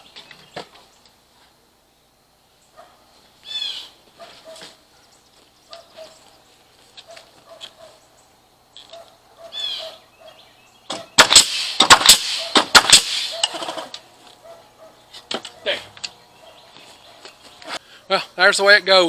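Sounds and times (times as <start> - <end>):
sharp knocks and clatter: 10.9 - 14.0.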